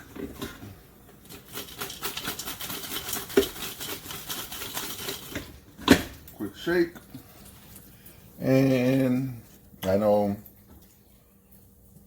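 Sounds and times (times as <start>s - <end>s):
fries rattling in air-fryer basket: 1.2s - 6.7s.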